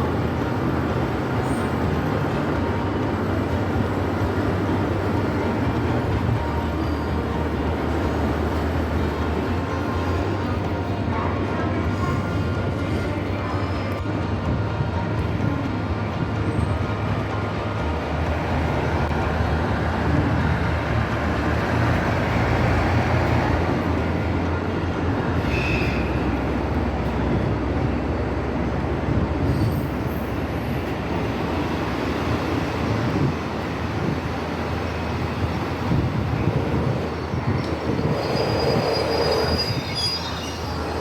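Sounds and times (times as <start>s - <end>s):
train wheels on rails: 0.0s - 41.0s
high squeal: 25.4s - 26.3s, 37.5s - 41.0s.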